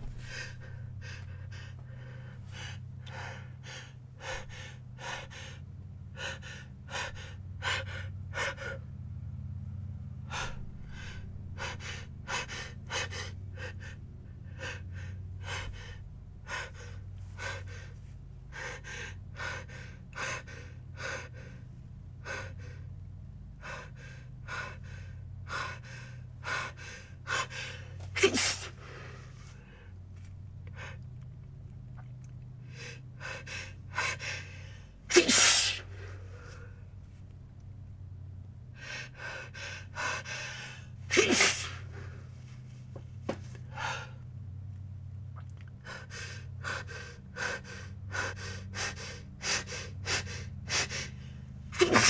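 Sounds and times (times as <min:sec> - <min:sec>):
sharp gasping breaths: 0:00.0 - 0:08.9, 0:10.3 - 0:23.0, 0:23.6 - 0:30.0, 0:32.6 - 0:37.0, 0:38.8 - 0:42.4, 0:43.6 - 0:44.2, 0:45.8 - 0:52.0
loud sneeze: 0:28.0 - 0:28.8, 0:35.1 - 0:36.0, 0:41.1 - 0:41.9, 0:51.8 - 0:52.0.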